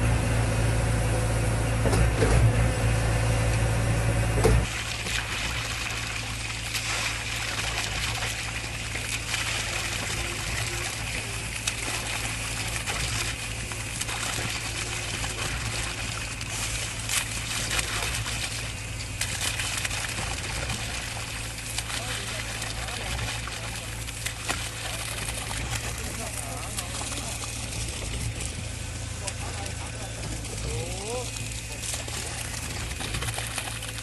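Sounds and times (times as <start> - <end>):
diesel engine humming: 0.0 - 34.0
wet material splattering: 4.7 - 28.6.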